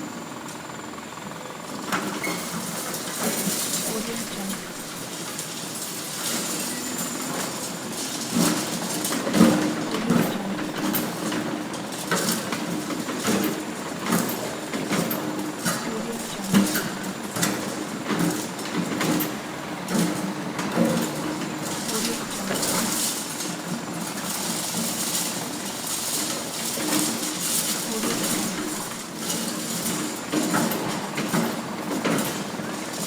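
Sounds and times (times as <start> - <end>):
voices: 3.4 - 5.0, 9.3 - 11.4, 15.0 - 17.7, 21.2 - 23.2, 27.5 - 29.2
machinery din: 3.8 - 4.9, 9.6 - 11.1, 15.7 - 17.4, 21.6 - 23.0, 27.7 - 29.2.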